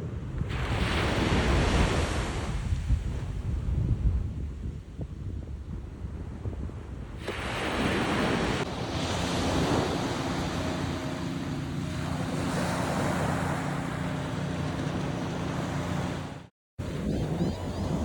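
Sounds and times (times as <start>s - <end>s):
wind on microphone: 0.0s - 18.0s
small waves on beach: 0.4s - 3.4s, 7.1s - 18.0s.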